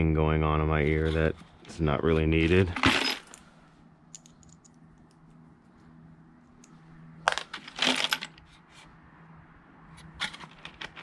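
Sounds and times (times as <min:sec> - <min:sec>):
faint steady hum: 0:00.0 - 0:10.1
metal bolts and nuts rattling: 0:02.7 - 0:03.4, 0:07.3 - 0:08.4.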